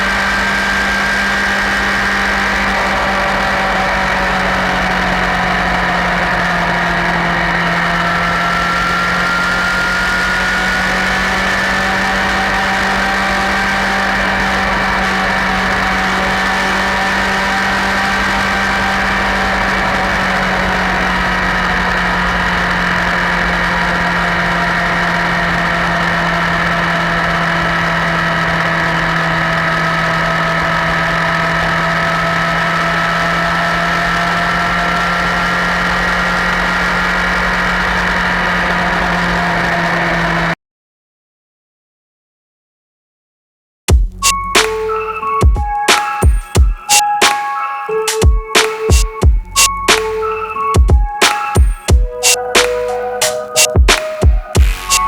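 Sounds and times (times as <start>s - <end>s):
motorcycle engine running steadily: 0.0s - 39.6s, 43.9s - 46.8s.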